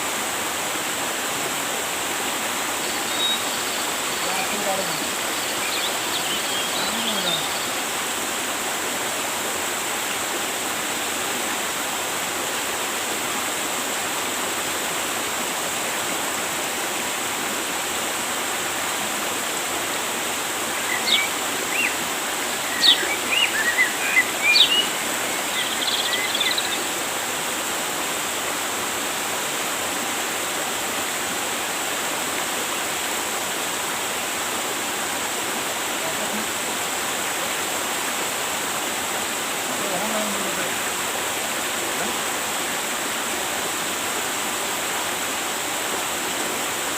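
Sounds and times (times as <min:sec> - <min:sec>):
river water rushing: 0:00.0 - 0:46.9
small bird chirping: 0:02.8 - 0:07.8, 0:20.8 - 0:22.0, 0:22.6 - 0:26.9.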